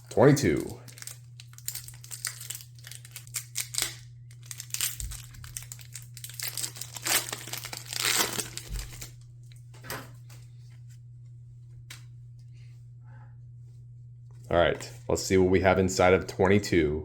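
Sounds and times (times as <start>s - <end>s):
foil wrapper crinkling and tearing: 0.0s - 9.2s
steady low hum: 0.0s - 17.0s.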